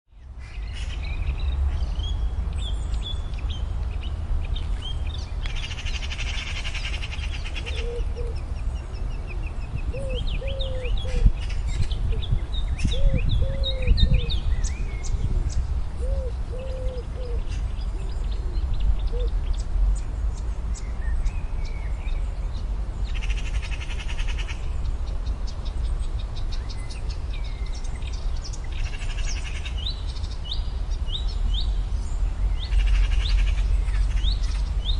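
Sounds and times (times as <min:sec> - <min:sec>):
warbler singing: 0:00.1 - 0:34.9
lower hooting calls: 0:06.0 - 0:08.5, 0:16.0 - 0:19.3.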